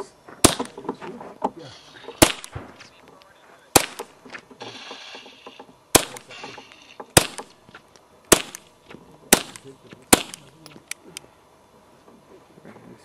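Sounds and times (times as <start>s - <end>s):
suppressed pistol shots: 0.4s - 0.9s, 2.1s - 2.9s, 3.7s - 5.3s, 5.9s - 7.6s, 8.3s - 11.0s.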